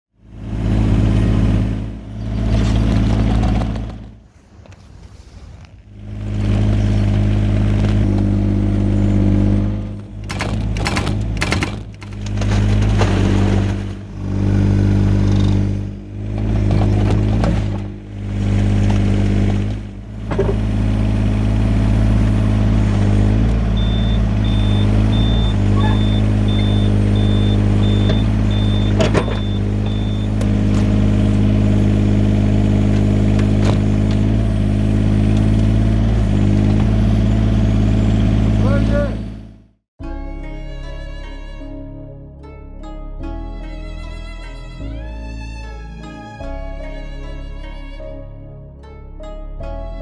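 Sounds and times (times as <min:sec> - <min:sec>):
excavator diesel engine running: 0:00.2 - 0:04.3, 0:05.9 - 0:39.6
short high beeps: 0:23.8 - 0:30.4.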